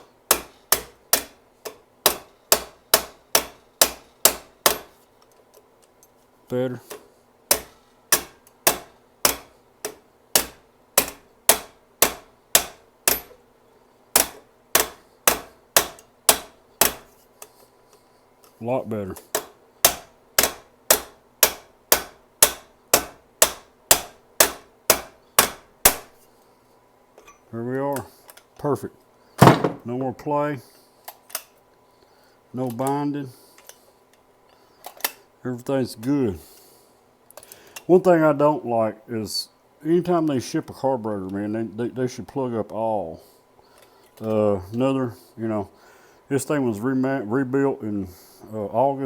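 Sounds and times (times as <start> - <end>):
hammer tapping on metal punch: 0.0 - 5.0, 6.9 - 13.4, 14.1 - 17.2, 19.2 - 26.1.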